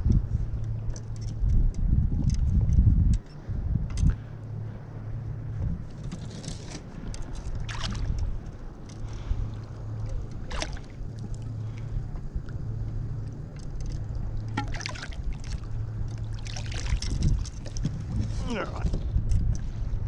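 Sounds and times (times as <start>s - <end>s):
steady low rumble: 0.0s - 20.0s
water splashing and dripping: 7.3s - 11.9s, 13.6s - 17.9s.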